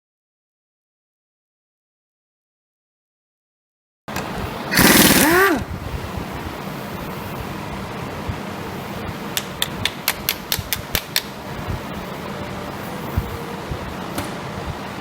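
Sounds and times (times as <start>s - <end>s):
steady fan hum: 4.1s - 15.0s.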